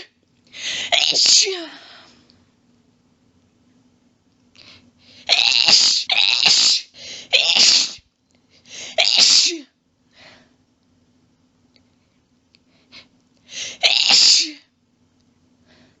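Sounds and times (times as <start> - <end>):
person sneezing: 0.6 - 1.7, 5.2 - 8.0, 8.8 - 9.7, 13.6 - 14.7.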